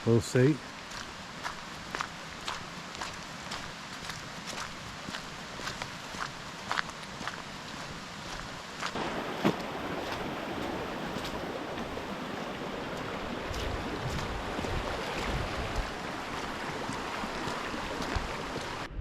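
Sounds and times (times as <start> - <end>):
footsteps on a track: 0.9 - 12.1, 13.0 - 18.8
wind buffeting microphone: 9.0 - 19.0.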